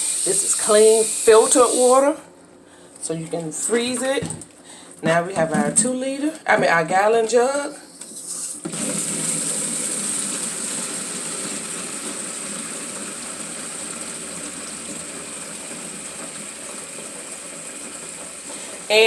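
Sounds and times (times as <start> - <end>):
water pouring into jug: 8.7 - 18.9.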